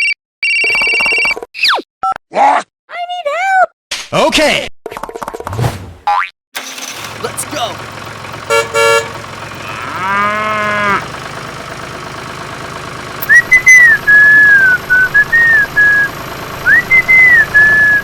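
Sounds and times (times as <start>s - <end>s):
low engine hum: 6.9s - 18.0s
cow mooing: 9.4s - 11.2s
whistled tune with sliding notes: 13.2s - 18.0s.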